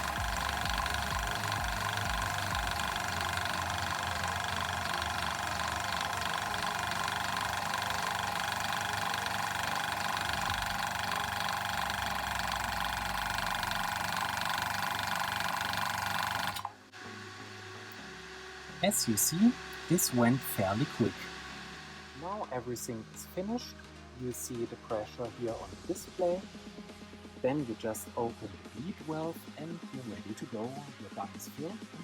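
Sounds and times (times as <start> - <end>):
air compressor running: 0.0 - 22.7.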